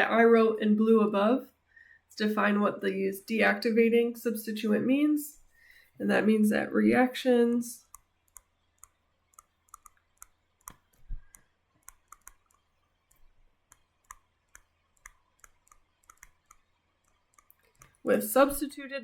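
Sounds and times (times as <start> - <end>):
stylus tapping on tablet screen: 7.9 - 18.0.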